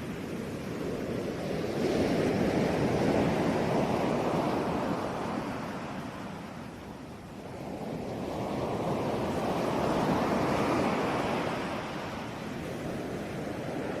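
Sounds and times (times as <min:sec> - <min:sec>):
ocean waves breaking on shore: 0:00.0 - 0:14.0.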